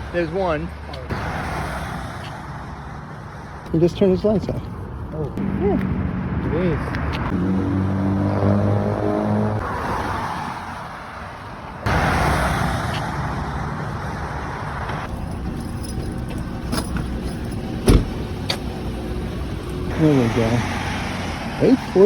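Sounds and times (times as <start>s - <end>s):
car engine and road hum: 0.0s - 22.0s.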